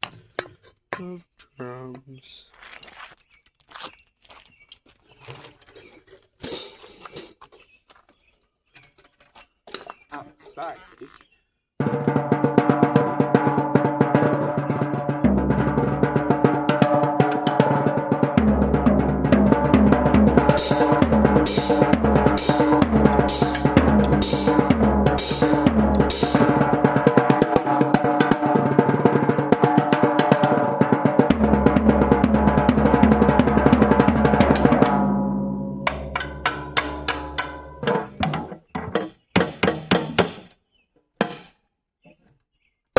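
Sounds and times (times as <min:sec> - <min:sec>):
fast bass drum beating: 0:11.8 - 0:35.2
fast heavy metal drumming: 0:11.8 - 0:39.0.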